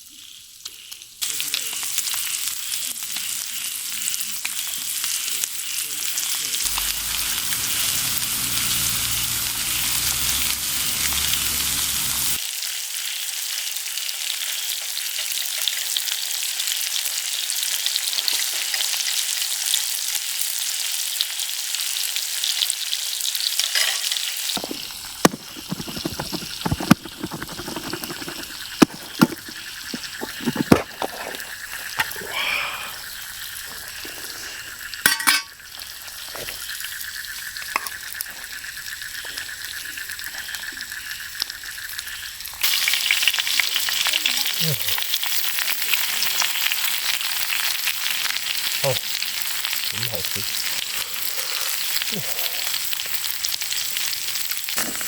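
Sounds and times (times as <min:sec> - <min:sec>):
food sizzling in a pan: 0:00.0 - 0:55.0
sharp clicks and knocks: 0:24.6 - 0:31.1.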